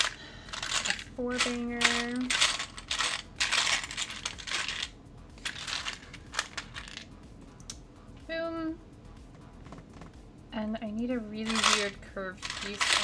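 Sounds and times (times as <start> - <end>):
plastic blocks clattering: 0.0 - 7.0, 11.5 - 13.0.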